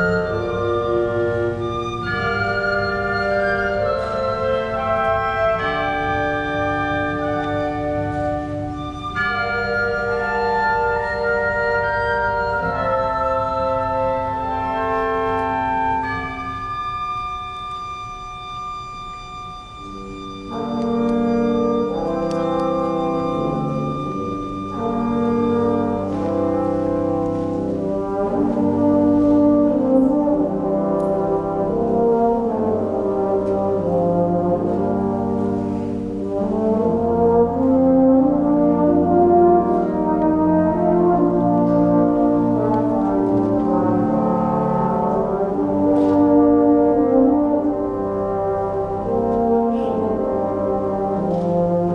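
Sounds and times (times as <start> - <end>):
brass chords: 0.0 - 51.9
wind band playing: 0.0 - 51.9.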